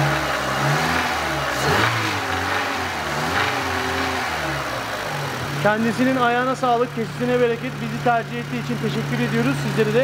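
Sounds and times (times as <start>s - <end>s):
car engine running: 0.0s - 10.0s.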